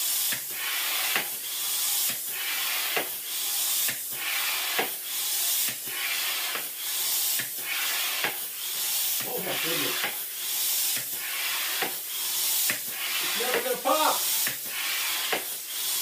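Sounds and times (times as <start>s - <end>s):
air pump hissing strokes: 0.0s - 16.0s.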